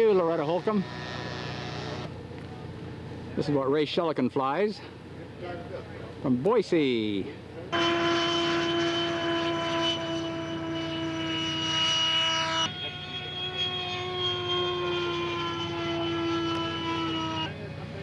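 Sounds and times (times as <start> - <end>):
model airplane engine whining: 0.0 - 2.2, 7.7 - 18.0.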